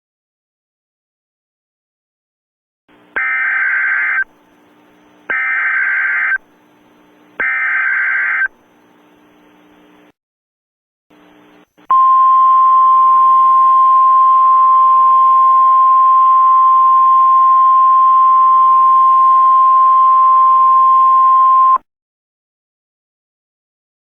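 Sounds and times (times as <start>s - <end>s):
radio static hiss and hum: 2.9s - 10.1s, 11.1s - 11.9s.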